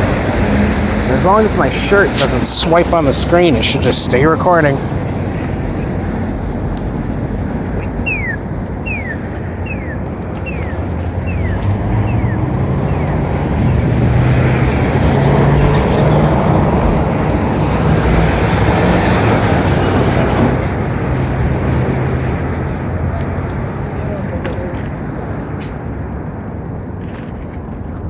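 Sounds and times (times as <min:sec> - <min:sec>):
bike tyre rumble on trail: 0:09.0 - 0:28.0.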